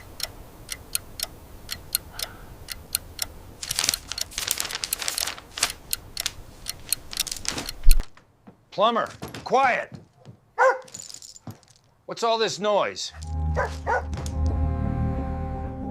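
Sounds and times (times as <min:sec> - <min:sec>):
water pipes ticking and rattling: 0:00.0 - 0:11.9.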